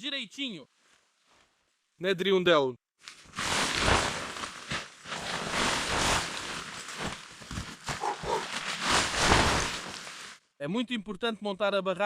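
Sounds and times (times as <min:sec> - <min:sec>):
tent fabric rustling: 0:03.0 - 0:10.4.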